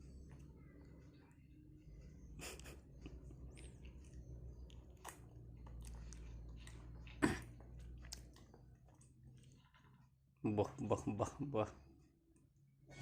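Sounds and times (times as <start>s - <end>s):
child chewing: 0.0s - 10.4s.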